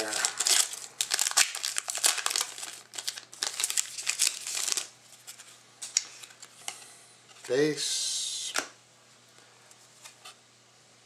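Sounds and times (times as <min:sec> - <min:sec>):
wrapper crinkling and tearing: 0:00.0 - 0:06.5.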